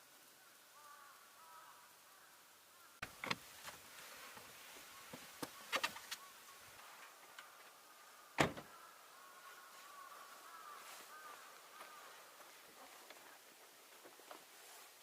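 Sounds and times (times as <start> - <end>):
faint background calls: 0.0 - 15.0.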